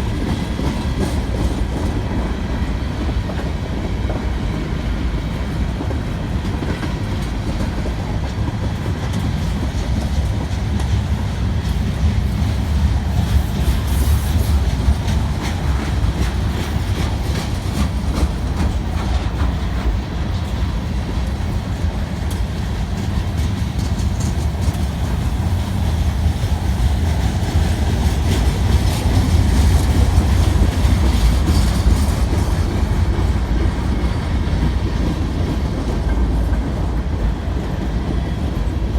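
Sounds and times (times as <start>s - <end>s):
freight train rumbling past: 0.0s - 38.9s
wheels clicking over rail joints: 5.8s - 38.9s.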